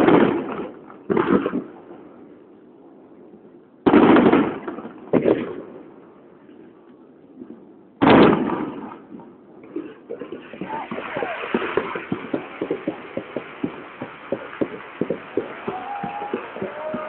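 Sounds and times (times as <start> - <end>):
firework shells booming: 0.0 - 1.9, 3.8 - 6.0, 8.0 - 17.0.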